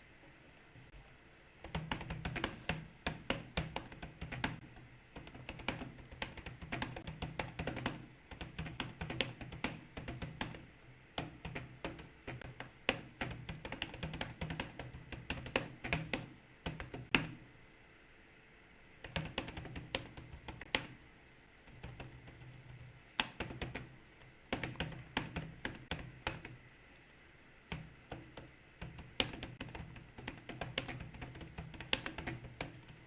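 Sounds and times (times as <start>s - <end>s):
fast keyboard typing: 1.6s - 17.4s, 19.0s - 21.0s, 21.7s - 26.6s, 27.7s - 33.0s.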